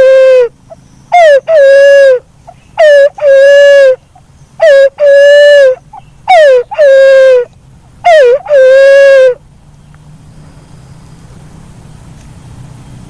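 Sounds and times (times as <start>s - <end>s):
dove hooting call: 0.0s - 9.4s.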